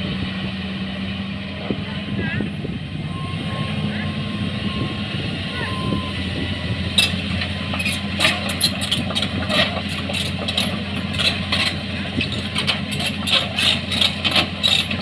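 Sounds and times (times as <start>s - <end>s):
excavator diesel engine running: 0.0s - 15.0s
metal and rock clanking: 6.9s - 15.0s.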